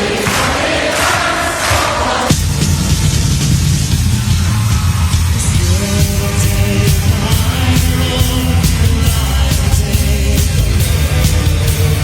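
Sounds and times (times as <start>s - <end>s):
choir-like music: 0.0s - 3.3s
bass-heavy electronic music: 2.3s - 12.0s.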